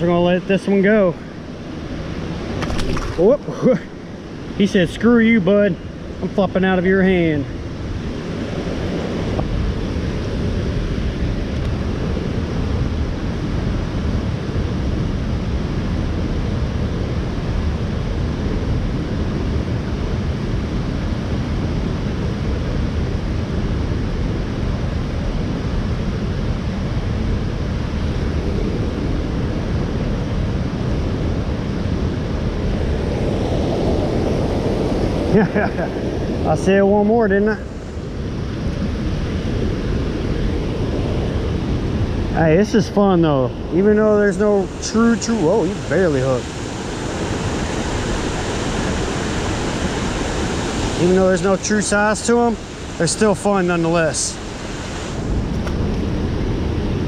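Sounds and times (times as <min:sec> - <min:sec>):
wind buffeting microphone: 0:00.0 - 0:57.0.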